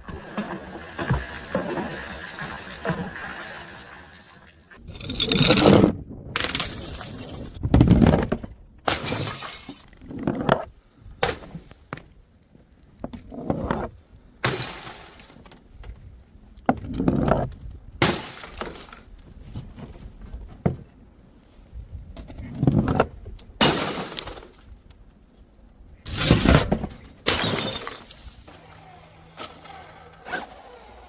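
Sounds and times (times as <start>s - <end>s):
glass bottles smashing: 6.4s - 7.5s, 8.9s - 9.9s, 14.5s - 15.3s, 18.0s - 19.1s, 23.6s - 24.5s, 27.2s - 28.5s
scattering glass shards: 8.9s - 9.9s, 27.3s - 28.5s.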